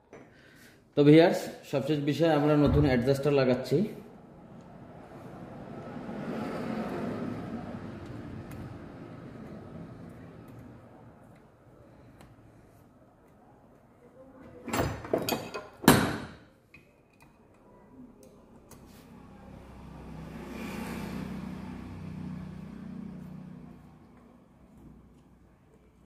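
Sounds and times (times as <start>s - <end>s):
metal tools clanking and scraping: 14.7s - 16.3s.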